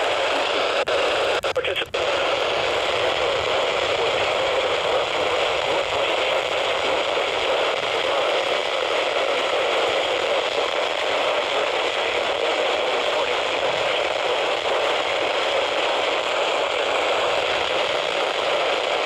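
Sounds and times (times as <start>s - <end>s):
radio static hiss: 0.0s - 19.0s.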